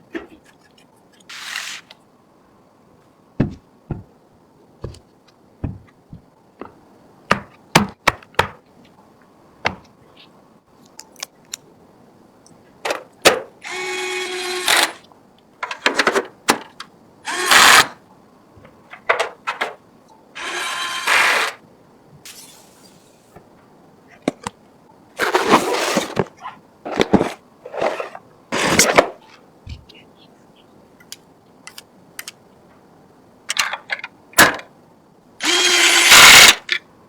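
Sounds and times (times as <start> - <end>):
small motorised tool whirring: 1.2 - 2.0, 13.6 - 15.0, 17.3 - 18.0, 20.4 - 21.6, 35.4 - 36.6.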